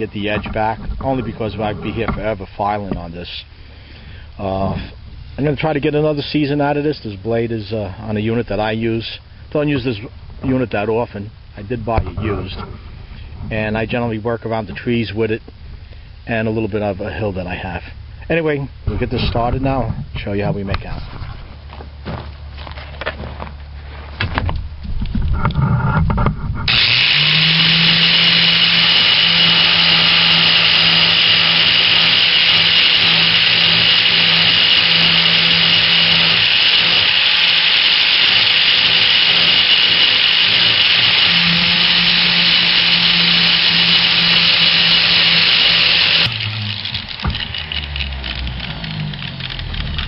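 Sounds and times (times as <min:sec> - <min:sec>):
electric grinder motor hum: 0:26.7 - 0:50.0
grinding metal blade: 0:26.7 - 0:50.0.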